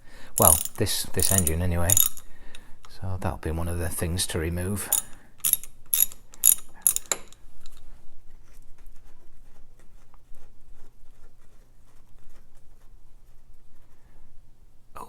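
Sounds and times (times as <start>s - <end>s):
ratchet wrench click: 0.4s - 2.6s, 4.9s - 7.8s
small metal parts clicking: 0.4s - 3.0s, 4.9s - 7.8s.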